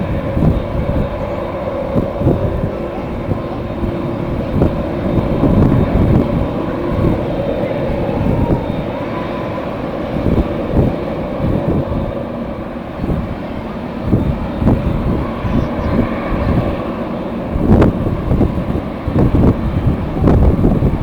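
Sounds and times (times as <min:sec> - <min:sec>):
jet engines rumbling: 0:00.0 - 0:21.0
wind buffeting microphone: 0:00.0 - 0:21.0.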